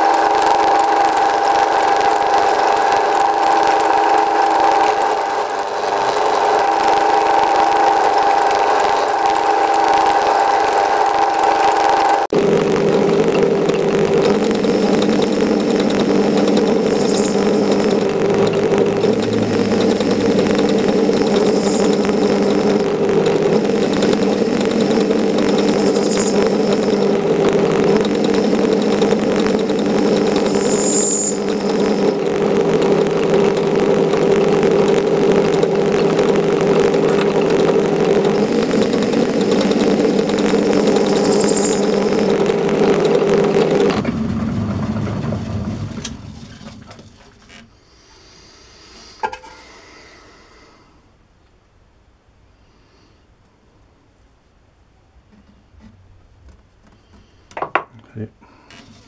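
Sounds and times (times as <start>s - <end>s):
metal lathe motor and gear hum: 0.0s - 44.7s.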